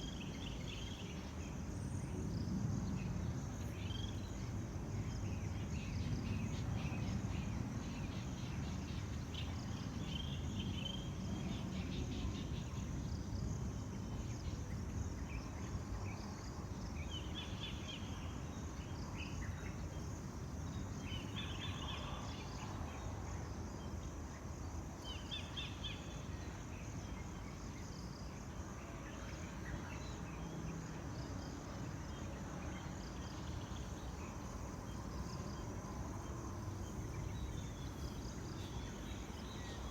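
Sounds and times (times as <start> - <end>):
high insect drone: 0.0 - 39.9.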